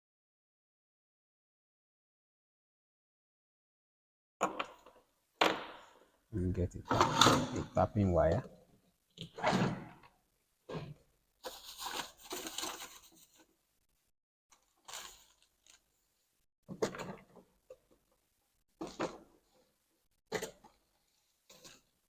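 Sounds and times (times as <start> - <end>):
scrapes and rustles of small tools: 10.7 - 13.6, 14.5 - 18.1.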